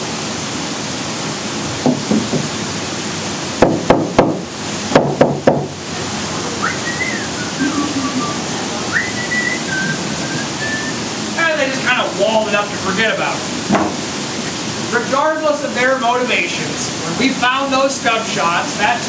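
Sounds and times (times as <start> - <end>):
steady rushing noise: 0.0 - 19.0
hard knocks: 1.8 - 2.6, 3.6 - 5.8, 13.7 - 14.0
whistling tone sliding: 6.6 - 11.0.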